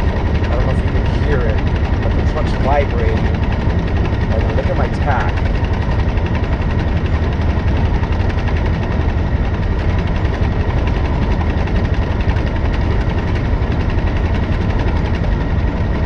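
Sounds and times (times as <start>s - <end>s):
diesel truck engine misfiring: 0.0s - 6.4s.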